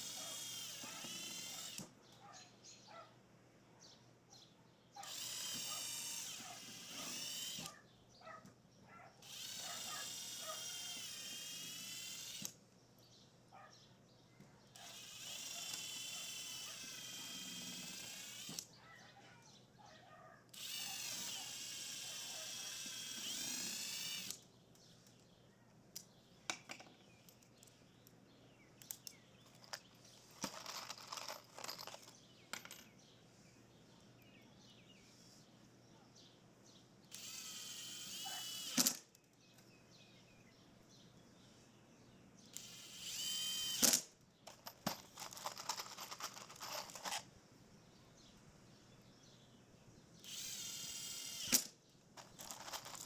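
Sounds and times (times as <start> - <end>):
power drill whining: 0.0 - 1.9, 5.0 - 7.8, 9.2 - 12.6, 14.8 - 18.7, 20.6 - 24.4, 37.1 - 39.0, 42.5 - 44.0, 45.2 - 47.2, 50.2 - 53.0.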